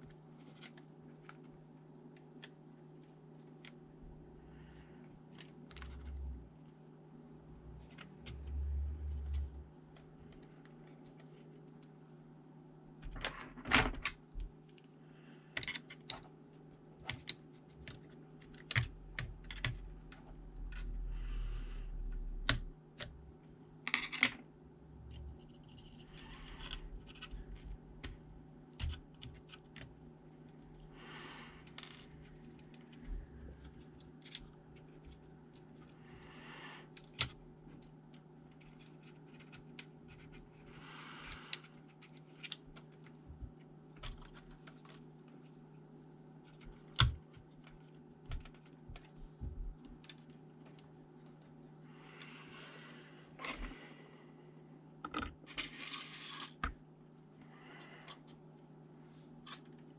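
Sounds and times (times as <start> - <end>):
faint steady hum: 0.0 - 59.9.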